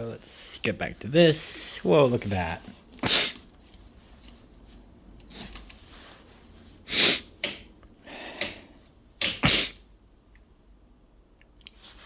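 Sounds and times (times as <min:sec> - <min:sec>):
person sniffing: 0:03.0 - 0:03.5, 0:06.8 - 0:07.4, 0:09.4 - 0:09.9.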